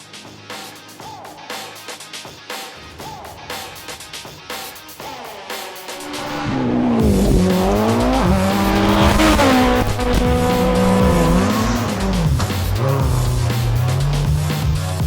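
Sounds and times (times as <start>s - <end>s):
music: 0.0s - 15.0s
rally car engine revving: 6.0s - 15.0s.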